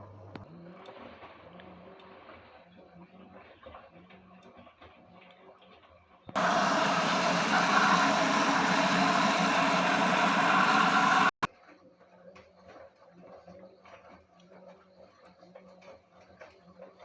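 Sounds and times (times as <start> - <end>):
washing machine humming: 6.4 - 11.5
washing machine rushing noise: 6.4 - 11.5.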